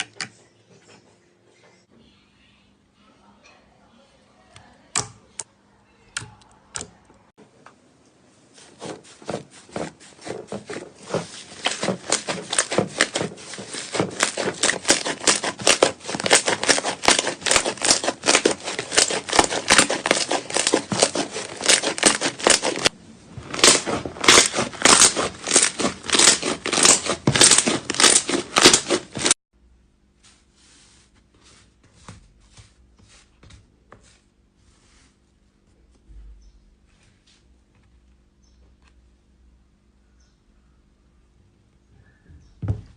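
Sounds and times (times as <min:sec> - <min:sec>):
slime crackling and popping: 0:11.1 - 0:29.4.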